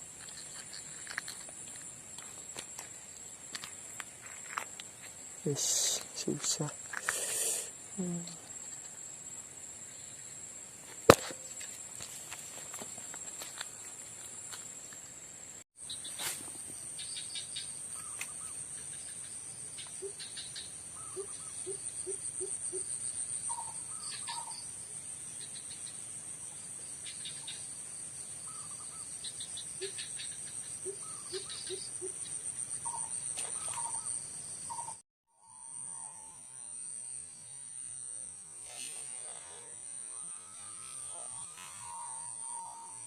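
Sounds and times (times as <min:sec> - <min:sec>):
high-pitched insect chorus: 0:00.0 - 0:43.0
short chirping calls: 0:28.5 - 0:35.0.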